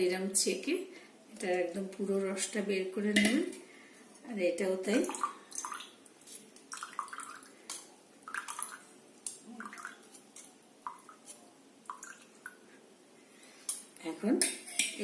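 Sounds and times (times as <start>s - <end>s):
liquid dripping and splashing: 4.9s - 12.6s.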